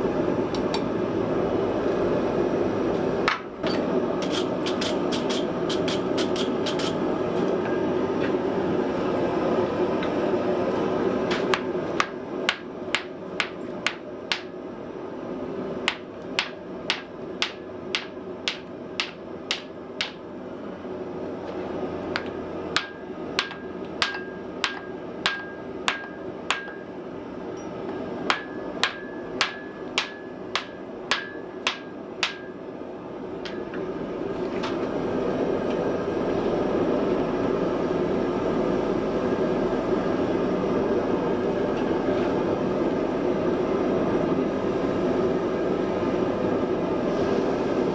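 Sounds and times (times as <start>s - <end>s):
hammer striking metal on anvil: 11.3s - 14.5s, 15.9s - 20.2s, 22.2s - 26.9s, 27.6s - 32.6s.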